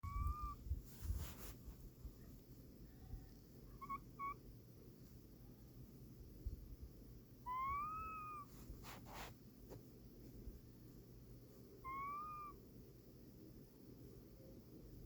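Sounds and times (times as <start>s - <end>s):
cat making thin pitched calls: 0.0s - 0.6s, 3.7s - 4.4s, 7.4s - 9.3s, 11.8s - 12.6s.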